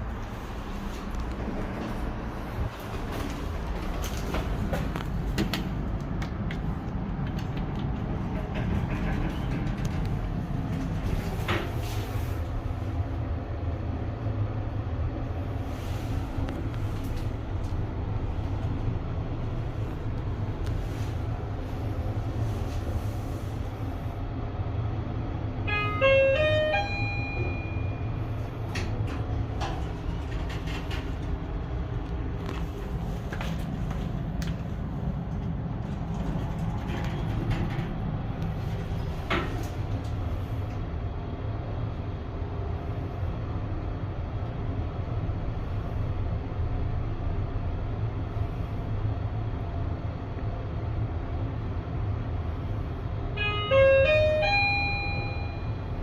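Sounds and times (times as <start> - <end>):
elevator car humming: 0.0 - 56.0
elevator electronic chime: 25.6 - 28.6, 53.3 - 56.0
elevator clicks: 25.7 - 28.0, 53.4 - 55.8.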